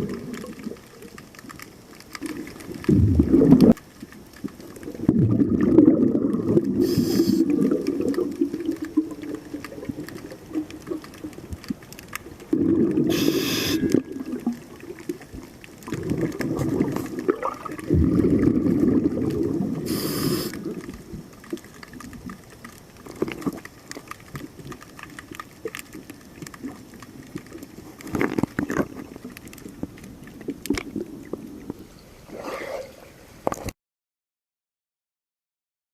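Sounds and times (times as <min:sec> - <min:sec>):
bubbly underwater exhalations: 0:00.0 - 0:01.2, 0:02.2 - 0:03.8, 0:04.8 - 0:11.5, 0:12.5 - 0:22.4
regulator inhalation hisses: 0:06.8 - 0:07.5, 0:13.1 - 0:14.0, 0:19.8 - 0:20.6.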